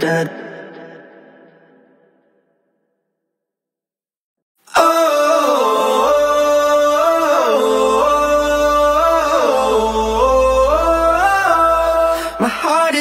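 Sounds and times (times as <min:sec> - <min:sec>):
pop song: 0:00.0 - 0:01.2, 0:04.6 - 0:13.0.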